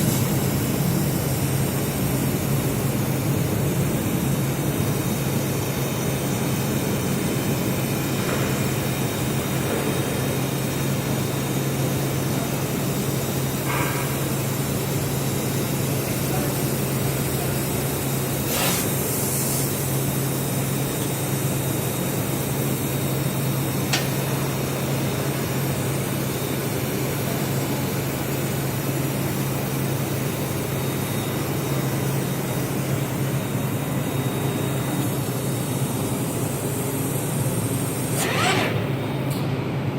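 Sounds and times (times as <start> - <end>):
welding machine hissing roar: 10.3 - 26.0, 36.6 - 39.4.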